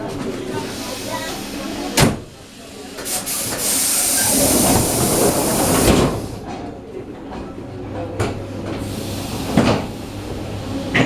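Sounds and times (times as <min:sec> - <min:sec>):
train car running hum: 0:00.0 - 0:11.0
compressed air hiss: 0:03.0 - 0:06.3, 0:08.8 - 0:10.3.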